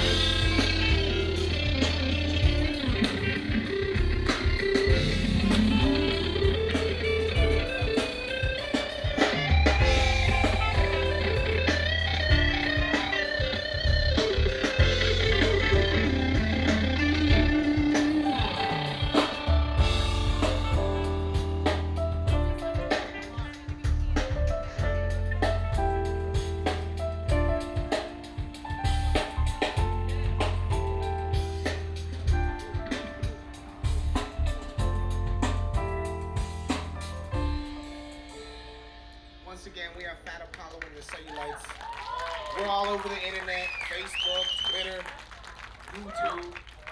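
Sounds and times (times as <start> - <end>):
guitar line: 0.0 - 24.4
steady drum beat: 0.0 - 38.3
held bass notes: 0.0 - 40.2
live band playing: 0.0 - 46.9.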